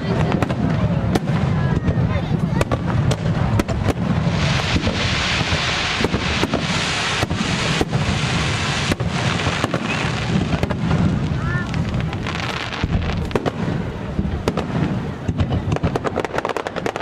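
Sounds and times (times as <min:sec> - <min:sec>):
fireworks bangs: 0:00.0 - 0:17.0
dense hiss: 0:04.0 - 0:13.3.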